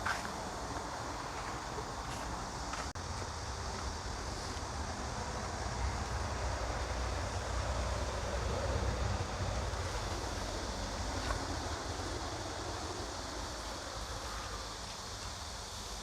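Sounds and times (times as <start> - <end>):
outdoor hiss: 0.0 - 16.0.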